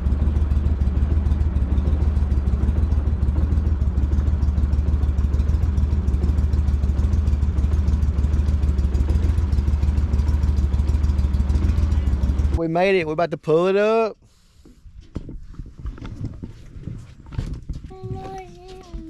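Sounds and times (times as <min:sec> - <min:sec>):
boat motor running: 0:00.0 - 0:13.2.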